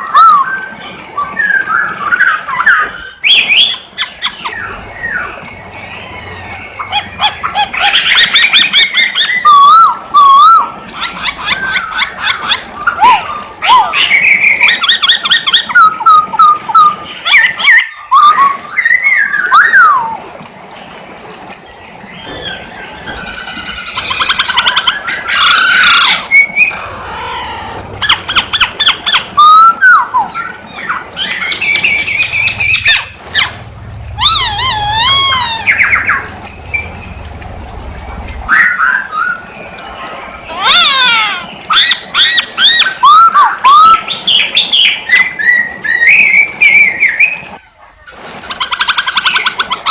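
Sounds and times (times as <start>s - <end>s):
bird singing whistled phrases: 38.5s - 39.5s.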